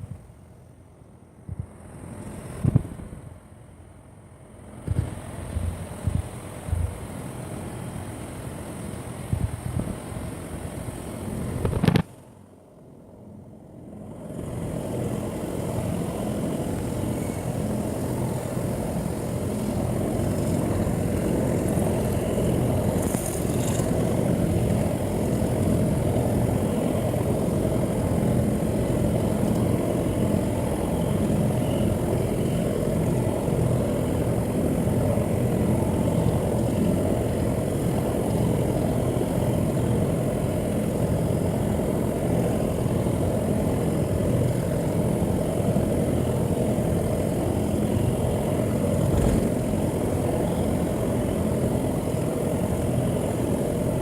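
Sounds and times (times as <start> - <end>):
low engine-like rumble: 0.0 - 54.0.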